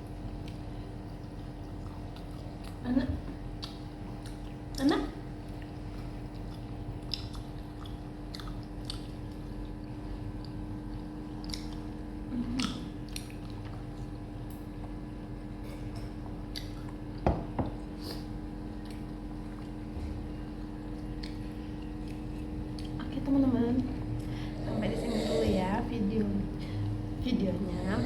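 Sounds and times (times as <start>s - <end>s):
wet chewing and mouth clicks: 0.0s - 17.2s, 18.1s - 23.2s
steady hum: 0.0s - 28.0s.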